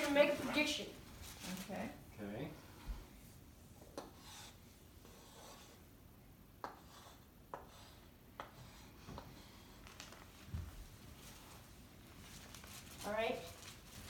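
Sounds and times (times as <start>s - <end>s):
chalk scratching on slate: 3.8s - 5.8s, 6.6s - 9.8s
chalk tapping slate: 3.8s - 5.8s, 6.6s - 9.7s.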